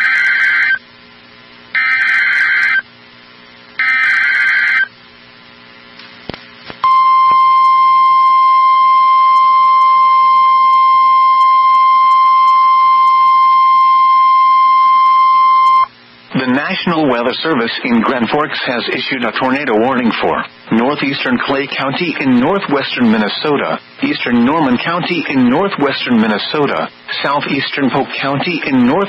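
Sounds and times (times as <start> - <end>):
screechy data bursts: 0.0 - 0.8, 1.8 - 2.9, 3.8 - 4.9
steady alarm tone: 0.0 - 0.8, 1.7 - 2.9, 3.8 - 4.9.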